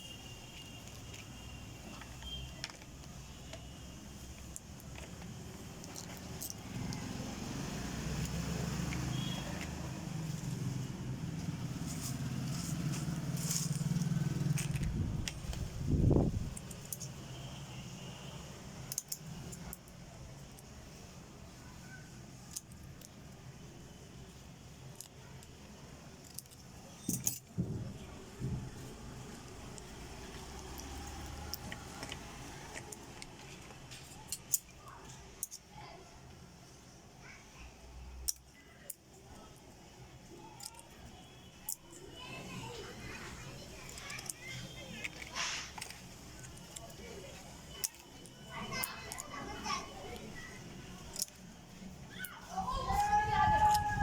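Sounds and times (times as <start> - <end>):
light clicks and rustles: 0.5 - 17.4, 38.2 - 54.0.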